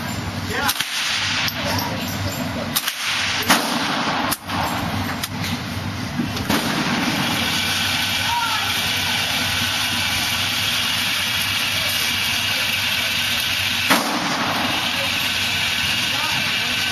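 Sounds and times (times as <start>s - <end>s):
steady low hum: 0.0s - 16.9s
rifle shots: 0.7s - 1.6s, 2.8s - 4.8s, 6.4s - 7.8s, 13.8s - 15.0s.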